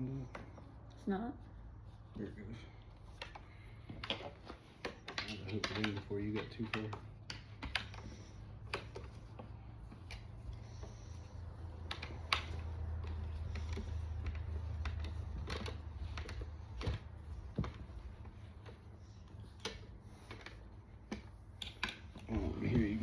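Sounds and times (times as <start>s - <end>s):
metal parts clicking and tapping: 3.1s - 9.3s.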